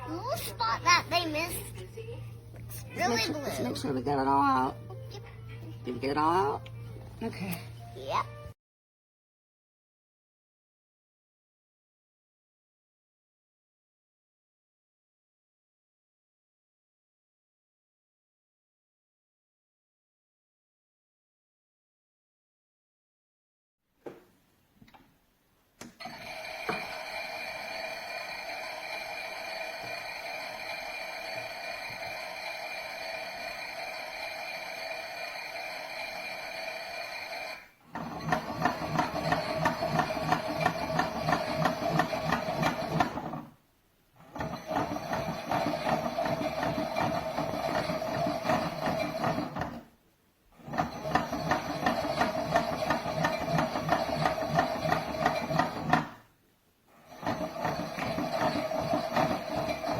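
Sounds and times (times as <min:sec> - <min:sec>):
toy speaker hum: 0:26.2 - 0:37.7.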